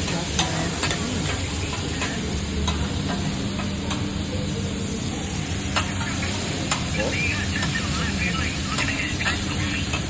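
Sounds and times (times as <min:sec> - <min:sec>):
metal spatulas clicking on griddle: 0:00.0 - 0:04.1, 0:05.7 - 0:06.1
noodles sizzling on a griddle: 0:00.0 - 0:10.0.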